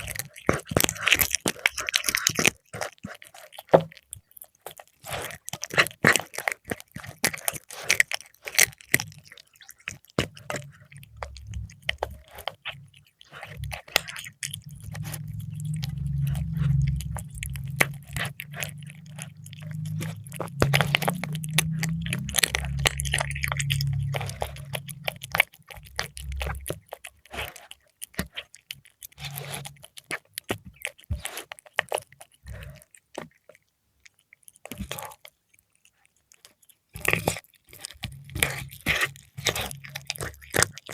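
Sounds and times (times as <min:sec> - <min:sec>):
cat chewing and crunching: 0:00.0 - 0:40.9
low steady rumble: 0:08.9 - 0:27.5.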